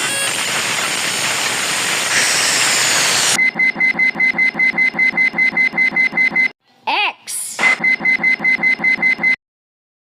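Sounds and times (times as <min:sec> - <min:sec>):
rapid alarm beeping: 0:00.0 - 0:00.5, 0:02.1 - 0:06.6, 0:07.7 - 0:09.4.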